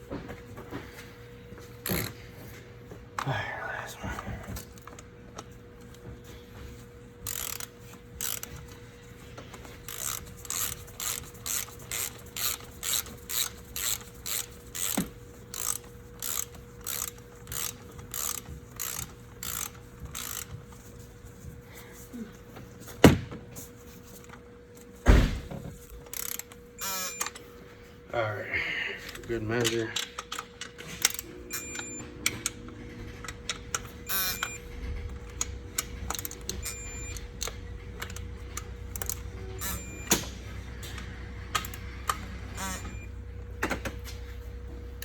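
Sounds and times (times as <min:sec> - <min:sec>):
ratchet wrench clicking: 0:07.2 - 0:08.9, 0:09.6 - 0:20.9, 0:26.0 - 0:27.4, 0:33.5 - 0:40.2.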